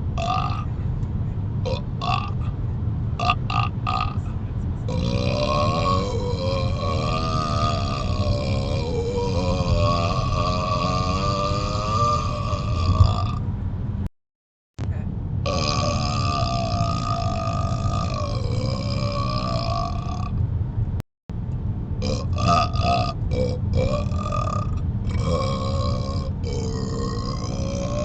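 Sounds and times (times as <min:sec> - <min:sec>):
car rumble: 0:00.0 - 0:14.1, 0:14.8 - 0:28.0
man burping: 0:00.2 - 0:00.7, 0:01.6 - 0:02.6, 0:03.2 - 0:04.3, 0:04.9 - 0:13.4, 0:15.4 - 0:20.4, 0:22.0 - 0:28.0.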